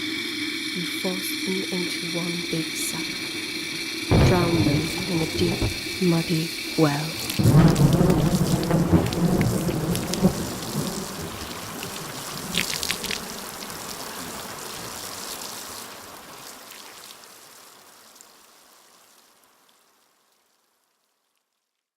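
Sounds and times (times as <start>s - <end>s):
rain: 0.0s - 21.9s
trickling water: 1.4s - 18.2s
sharp water drips: 1.5s - 17.6s.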